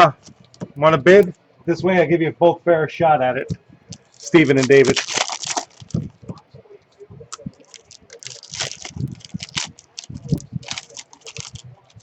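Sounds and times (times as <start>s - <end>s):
small objects clicking and rustling: 3.9s - 6.1s, 7.3s - 12.0s.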